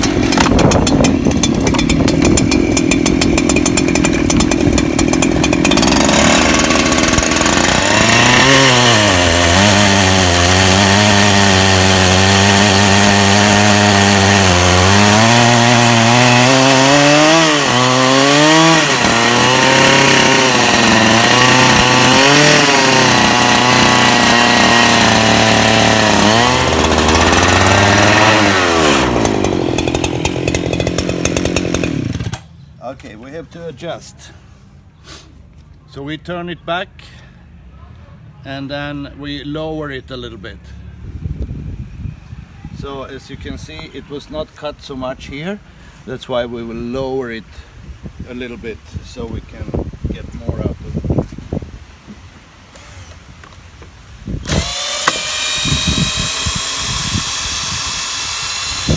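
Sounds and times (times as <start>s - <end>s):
chainsaw cutting log: 0.0s - 32.5s, 52.7s - 53.6s, 54.3s - 58.9s.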